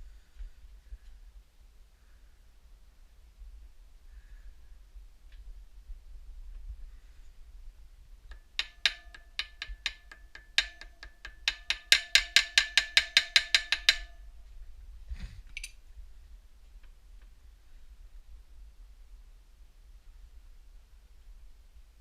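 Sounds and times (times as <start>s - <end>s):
hammer striking metal: 8.3s - 14.3s.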